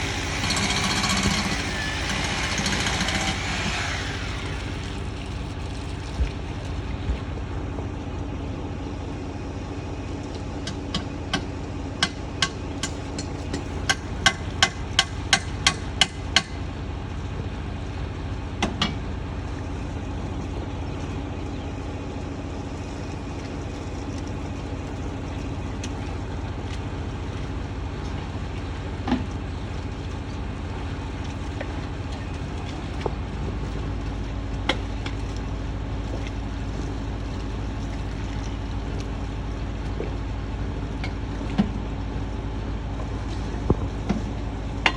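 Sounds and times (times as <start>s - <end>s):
motor humming: 0.0s - 8.6s.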